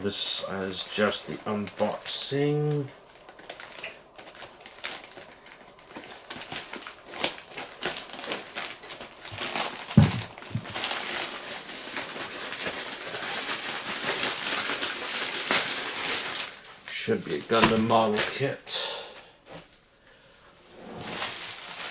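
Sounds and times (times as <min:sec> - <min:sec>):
packaging crinkling and rustling: 0:00.0 - 0:18.6, 0:21.0 - 0:21.9
thud: 0:10.0 - 0:10.8.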